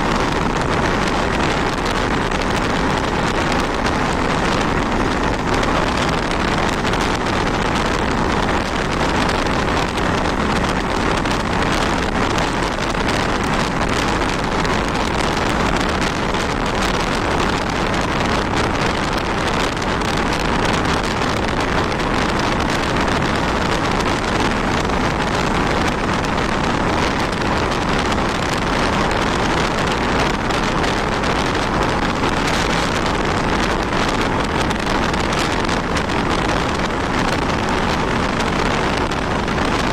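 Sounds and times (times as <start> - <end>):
wind rush over microphone: 0.0 - 39.9.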